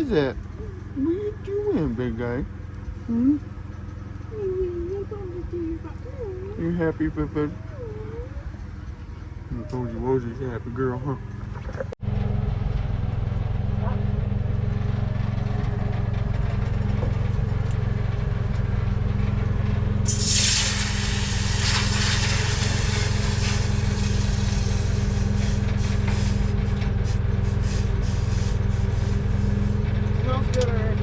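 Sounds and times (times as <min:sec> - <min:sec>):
generator engine humming: 0:00.0 - 0:31.0
sudden loud hiss: 0:20.0 - 0:29.6.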